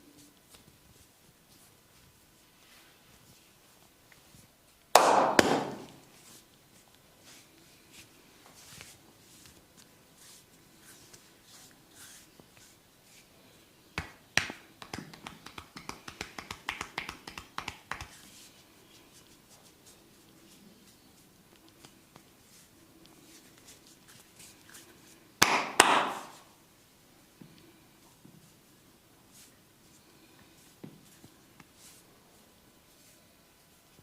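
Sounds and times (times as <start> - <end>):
hand slap: 5.0 - 6.0, 14.0 - 18.2, 25.4 - 26.5
sharp hand claps: 5.0 - 6.0, 14.0 - 18.2, 25.4 - 26.4
quick hand taps: 14.0 - 18.2, 25.4 - 26.4.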